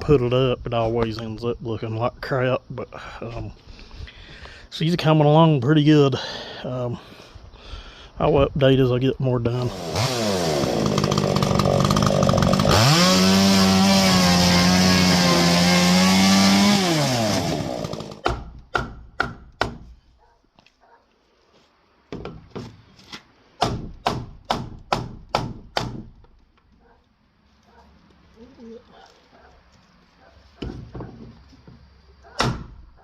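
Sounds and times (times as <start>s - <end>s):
chainsaw engine revving: 9.6s - 18.2s
sharp knocks: 18.2s - 19.9s, 23.6s - 26.2s.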